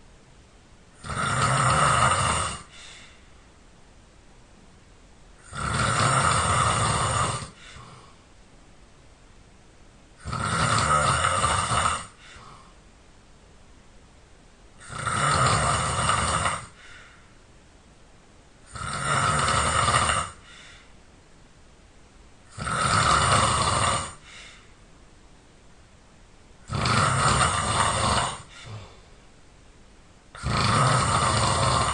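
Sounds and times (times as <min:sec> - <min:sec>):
person snoring loudly: 0:01.0 - 0:03.0, 0:05.4 - 0:08.2, 0:10.2 - 0:12.7, 0:14.8 - 0:16.9, 0:18.6 - 0:20.6, 0:22.5 - 0:24.4, 0:26.6 - 0:29.0, 0:30.4 - 0:31.9.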